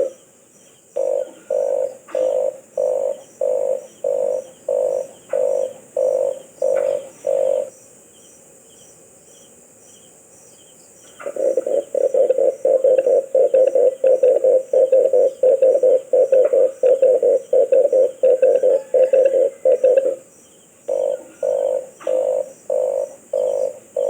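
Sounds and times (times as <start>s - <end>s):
dove cooing: 0.0s - 0.2s, 1.0s - 7.7s, 11.2s - 20.3s, 20.9s - 24.0s
insect chirping: 0.0s - 24.0s.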